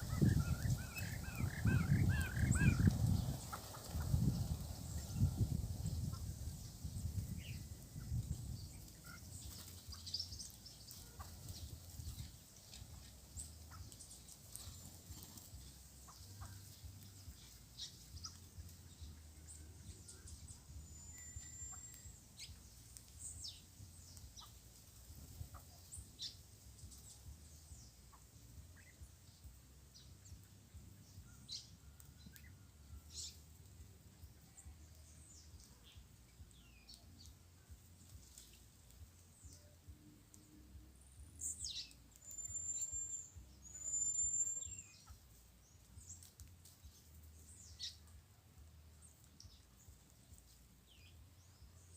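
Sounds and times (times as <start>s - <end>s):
faint low rumble: 0.0s - 51.9s
songbirds chirping: 0.0s - 51.9s
bird whistled notes: 20.8s - 22.2s, 42.2s - 45.0s.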